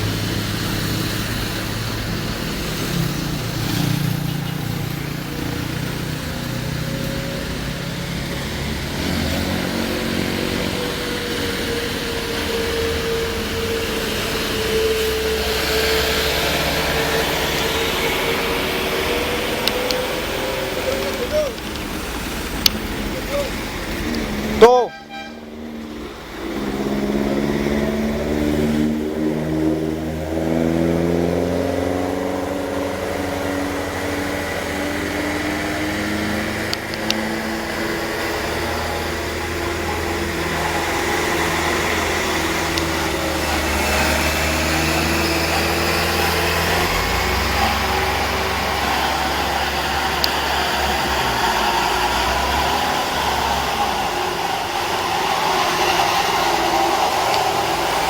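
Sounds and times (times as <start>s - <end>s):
truck diesel engine labouring: 0.0s - 58.0s.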